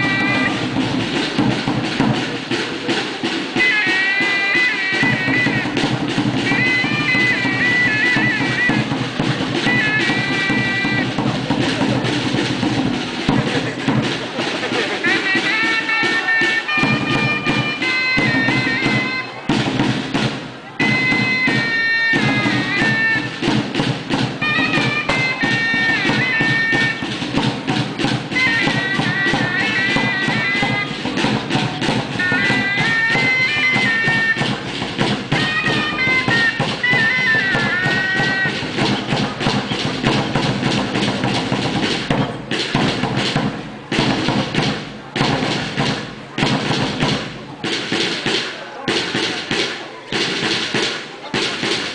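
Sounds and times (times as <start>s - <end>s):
shrill shawm melody: 0.0s - 1.8s, 3.3s - 11.8s, 15.0s - 19.8s, 20.8s - 42.7s
fast steady drumming: 0.0s - 51.9s.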